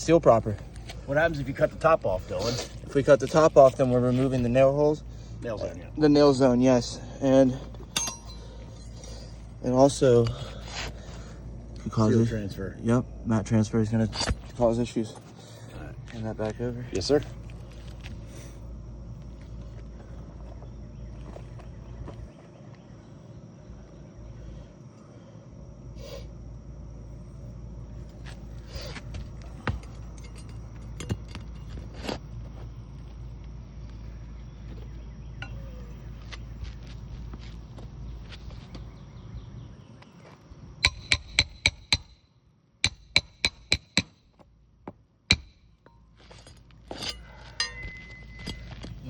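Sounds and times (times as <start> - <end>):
high insect drone: 0.0 - 49.0
hammer striking metal: 7.9 - 8.8, 40.8 - 42.2, 45.3 - 45.6, 47.0 - 48.6.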